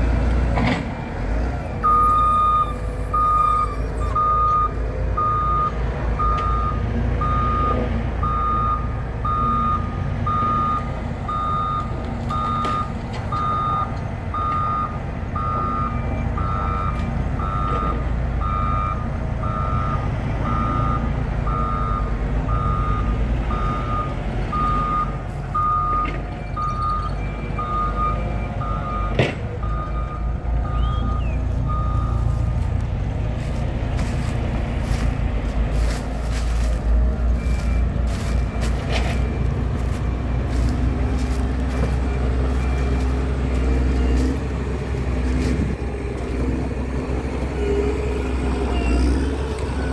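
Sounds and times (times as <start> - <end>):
diesel engine rumble: 0.0 - 49.9
back-up alarm beeping: 1.8 - 32.3.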